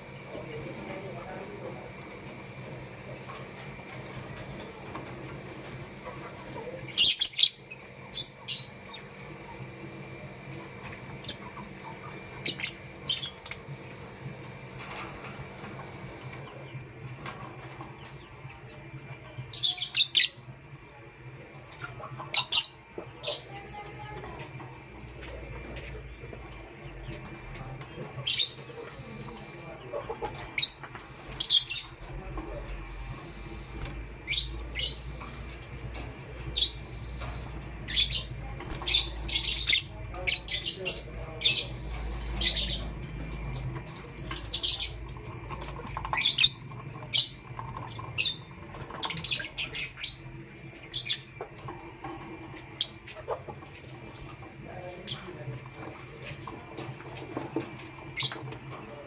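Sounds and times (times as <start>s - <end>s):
faint low hum: 0.0s - 59.0s
lovebirds chirping: 0.0s - 59.0s.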